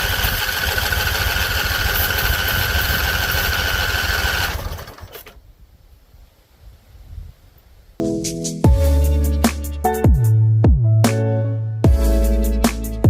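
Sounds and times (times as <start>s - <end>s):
lawn mower engine running: 0.0s - 5.4s
mower engine shutting off: 0.0s - 5.4s.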